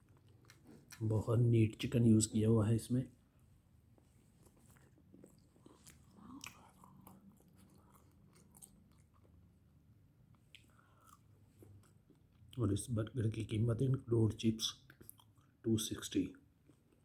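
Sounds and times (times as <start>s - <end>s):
chewing and biting food: 0.0s - 2.0s, 3.8s - 12.6s.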